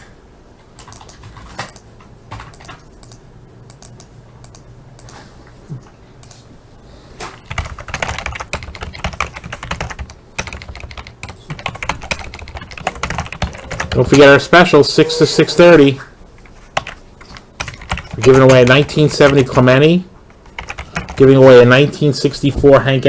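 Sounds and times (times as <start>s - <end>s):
computer keyboard typing: 0.8s - 5.2s, 7.4s - 14.3s, 16.4s - 19.7s, 20.3s - 21.4s.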